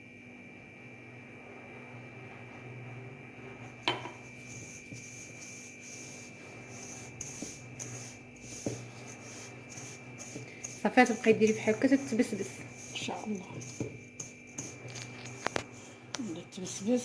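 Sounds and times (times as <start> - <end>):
hands rubbing semolina in a bowl: 4.2 - 17.0.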